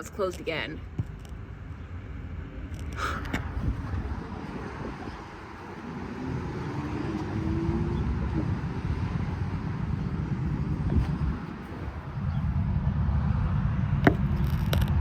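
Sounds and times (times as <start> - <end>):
road traffic rumble: 0.0 - 15.0
faint rising engine note: 3.5 - 14.5.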